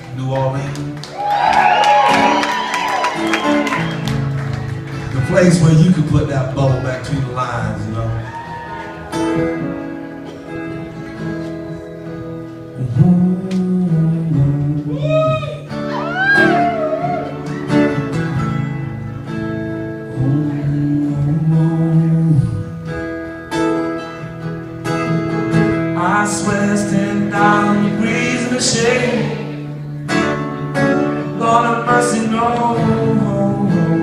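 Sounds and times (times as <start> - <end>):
acoustic guitar chords: 0.0 - 34.0
sustained bass notes: 9.3 - 15.3, 16.6 - 23.3
person singing wordlessly: 26.0 - 29.5, 31.3 - 34.0.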